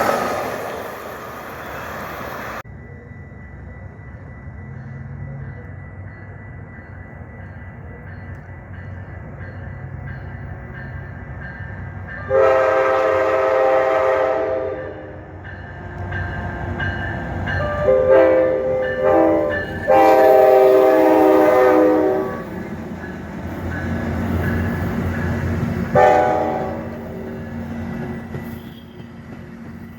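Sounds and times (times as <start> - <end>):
train rumble: 0.0 - 29.9
locomotive air horn blasts: 12.2 - 15.2, 17.6 - 22.5, 25.9 - 27.1.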